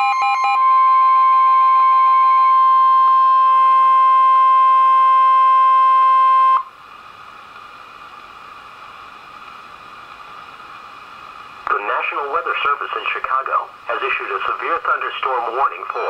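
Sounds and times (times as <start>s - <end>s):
radio static hiss: 7.1s - 16.0s.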